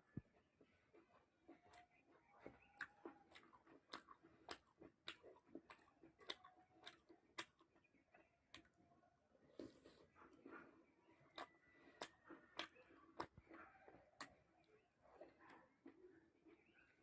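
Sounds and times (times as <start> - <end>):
person chewing food: 0.0 - 17.0
wet mouth clicks and smacks: 1.1 - 7.7, 11.3 - 13.6.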